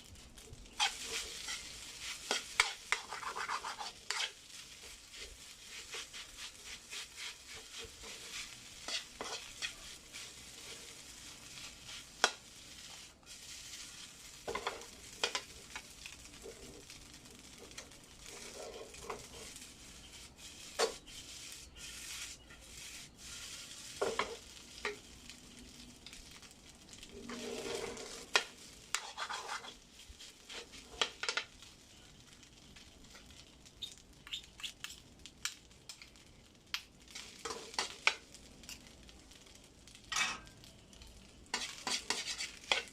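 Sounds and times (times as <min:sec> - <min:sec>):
rice sizzling in a pan: 0:00.0 - 0:42.9
spatula scraping and clinking: 0:00.7 - 0:10.8, 0:14.4 - 0:15.8, 0:27.3 - 0:29.8, 0:41.5 - 0:42.9.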